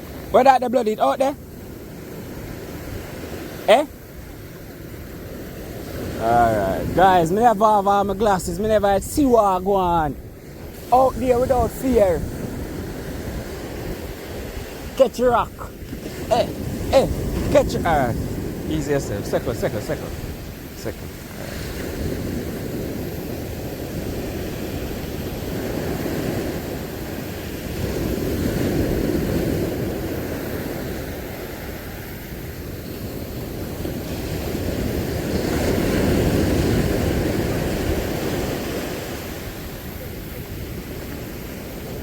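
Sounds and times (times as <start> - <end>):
sea waves washing on shore: 0.0 - 42.0.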